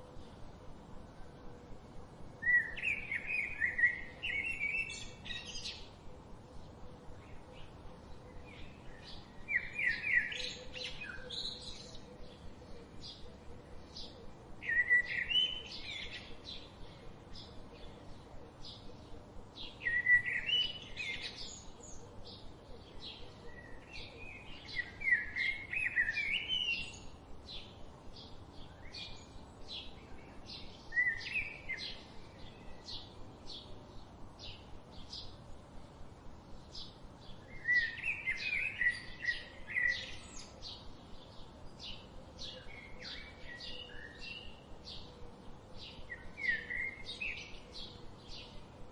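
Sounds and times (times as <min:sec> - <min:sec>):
bird warbling song: 0:02.4 - 0:35.4, 0:36.6 - 0:48.9
bird chirps: 0:36.8 - 0:45.2.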